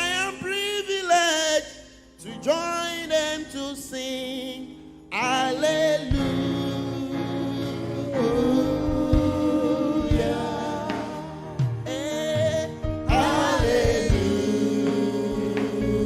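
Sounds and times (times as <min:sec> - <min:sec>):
voices singing long notes: 0:05.5 - 0:16.0
band accompaniment: 0:05.6 - 0:16.0.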